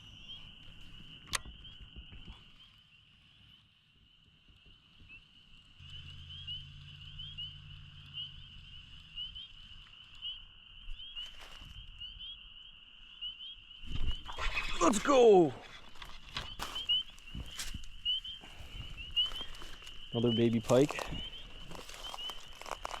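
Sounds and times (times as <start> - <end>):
high trilling animal chorus: 5.7 - 23.0.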